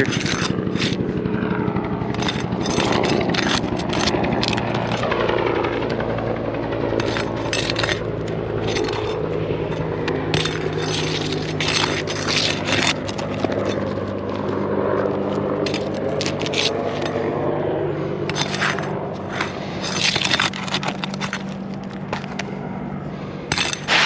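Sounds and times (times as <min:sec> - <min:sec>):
roofing tool scraping nails: 0:00.0 - 0:01.2, 0:02.0 - 0:06.0, 0:06.9 - 0:17.3, 0:18.3 - 0:22.6, 0:23.5 - 0:24.0
steady mechanical hum: 0:00.0 - 0:24.0
sharp metallic clinks: 0:02.0 - 0:05.2, 0:07.0 - 0:14.6, 0:15.2 - 0:17.4, 0:18.3 - 0:22.4, 0:23.5 - 0:24.0.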